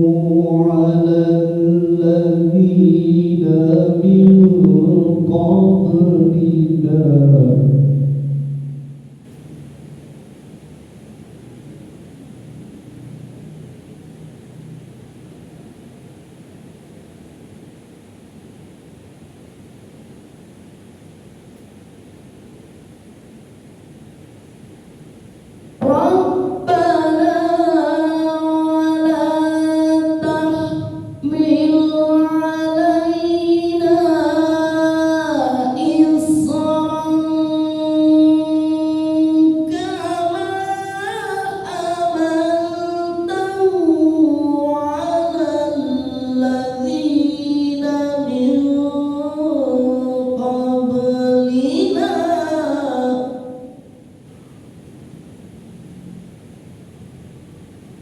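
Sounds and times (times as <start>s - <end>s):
high-pitched voice chanting: 0.0s - 8.5s, 25.8s - 53.6s.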